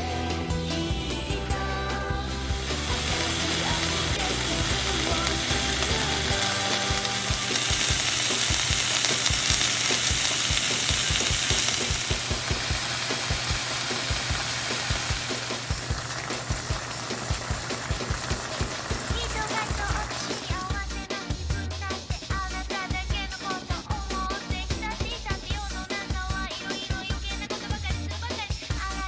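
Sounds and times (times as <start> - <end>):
faint background music: 0.0 - 29.0
meat sizzling in a pan: 2.3 - 20.7.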